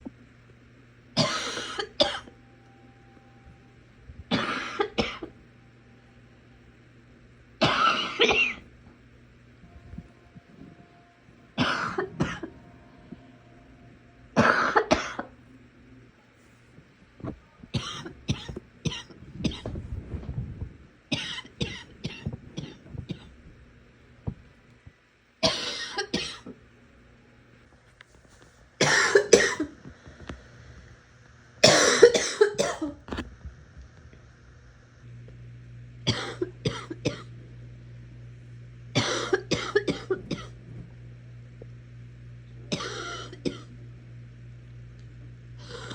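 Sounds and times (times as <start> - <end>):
person coughing: 1.2 - 2.3, 4.3 - 5.3, 7.6 - 8.6, 11.6 - 12.5, 14.4 - 15.3, 17.8 - 19.7, 21.2 - 23.3, 25.4 - 26.6, 28.8 - 29.8, 31.6 - 33.0, 36.1 - 37.3, 39.0 - 40.5, 42.7 - 43.7.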